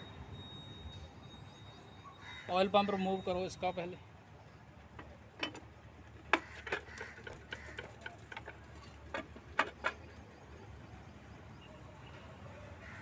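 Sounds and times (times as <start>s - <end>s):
hand tools clicking on engine parts: 4.9s - 10.2s.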